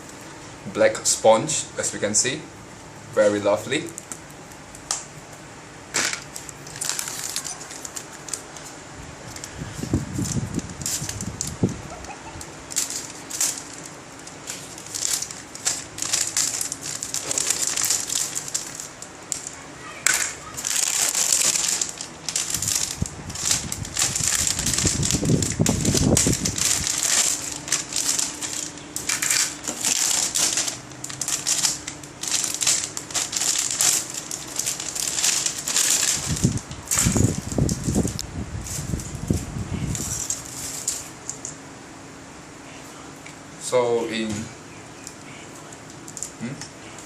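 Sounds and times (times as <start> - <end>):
plastic packaging crinkling: 5.9 - 41.6.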